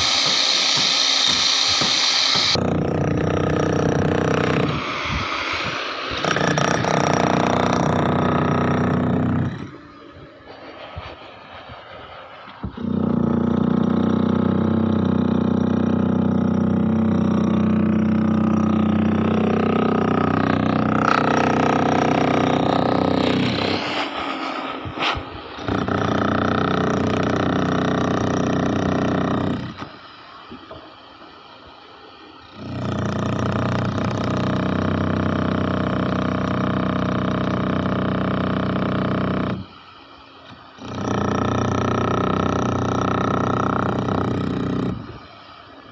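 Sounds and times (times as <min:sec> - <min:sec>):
concrete saw running: 0:00.0 - 0:09.8, 0:12.7 - 0:29.8, 0:40.8 - 0:45.1.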